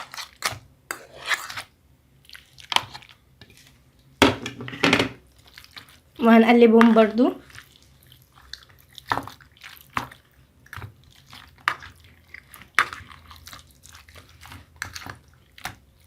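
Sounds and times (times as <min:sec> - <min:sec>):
wet squelches of raw chicken: 0:05.2 - 0:16.0.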